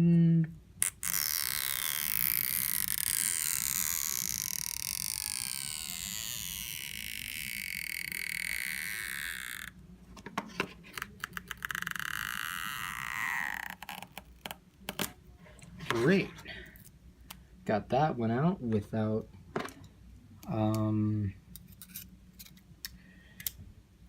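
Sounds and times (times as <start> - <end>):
adhesive strip squeaking: 0.8 - 9.8, 10.9 - 14.6.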